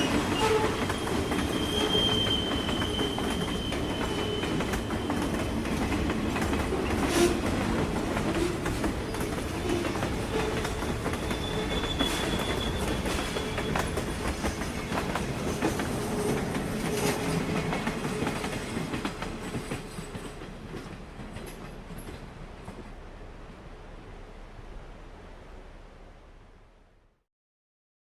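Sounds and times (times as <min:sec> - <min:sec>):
high wheel squeal: 0:00.0 - 0:05.5, 0:09.6 - 0:14.0
train wheels clattering on rails: 0:00.0 - 0:23.0.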